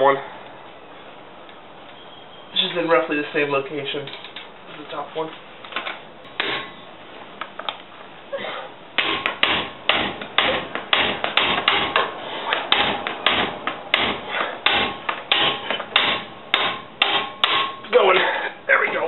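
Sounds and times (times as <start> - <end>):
hammer striking socket wrench: 14.0 - 17.8.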